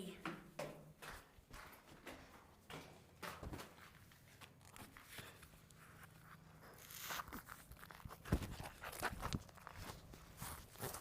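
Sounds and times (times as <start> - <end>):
faint rustling and crunching clicks: 3.3 - 11.0.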